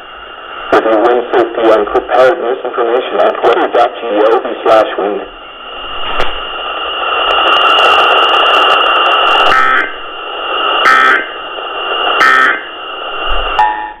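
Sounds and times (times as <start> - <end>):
radio static hiss: 0.0 - 14.0
harsh buzzing data tones: 8.8 - 14.0.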